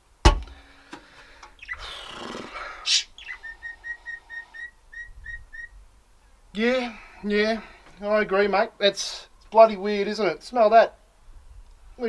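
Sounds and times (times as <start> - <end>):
bird chirping: 0.0 - 6.6
breathy hiss: 0.5 - 4.9.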